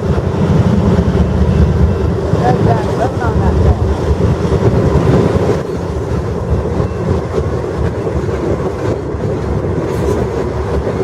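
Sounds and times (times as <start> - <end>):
train wheels rumbling on rails: 0.0 - 11.0.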